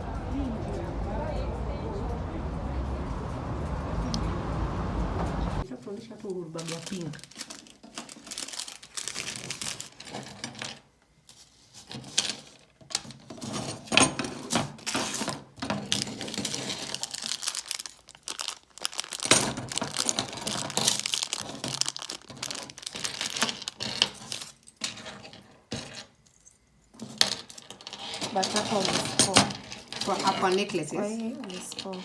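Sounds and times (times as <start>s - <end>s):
shopping bag rustling: 6.1s - 10.8s, 11.4s - 26.0s, 27.1s - 32.0s.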